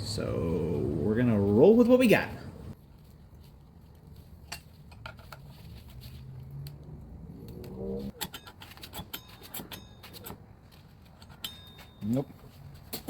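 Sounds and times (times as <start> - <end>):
low hum: 0.0 - 4.6, 5.7 - 8.2
metal tools clinking: 8.1 - 13.0.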